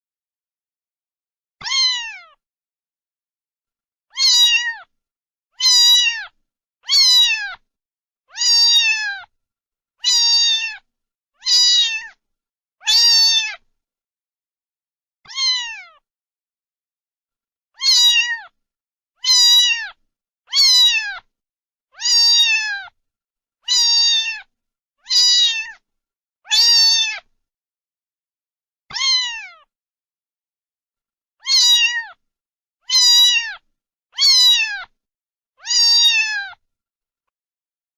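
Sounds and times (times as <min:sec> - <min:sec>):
cat meowing: 0:01.6 - 0:02.4, 0:04.1 - 0:04.9, 0:05.6 - 0:07.6, 0:08.3 - 0:09.3, 0:10.0 - 0:12.2, 0:12.8 - 0:13.6, 0:15.3 - 0:16.0, 0:17.8 - 0:18.6, 0:19.2 - 0:21.3, 0:22.0 - 0:23.0, 0:23.6 - 0:25.8, 0:26.5 - 0:27.3, 0:28.9 - 0:29.7, 0:31.4 - 0:32.2, 0:32.8 - 0:35.0, 0:35.6 - 0:36.6.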